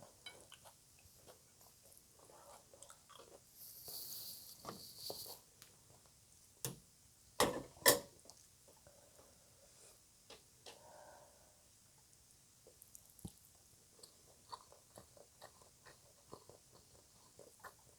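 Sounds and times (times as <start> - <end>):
wet chewing mouth sounds: 0.0 - 5.4, 12.7 - 17.9.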